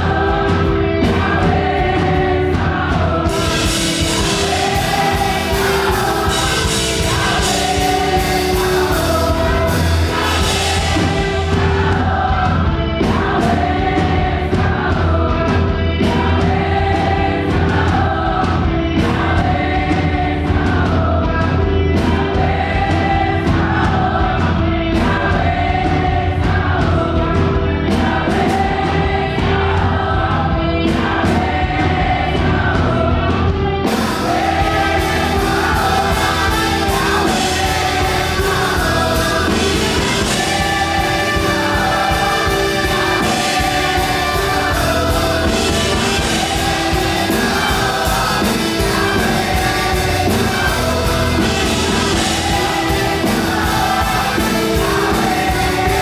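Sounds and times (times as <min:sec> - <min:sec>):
drum hits: 0:00.0 - 0:21.1, 0:33.9 - 0:56.0
choir singing: 0:00.0 - 0:56.0
steady bass: 0:00.0 - 0:56.0.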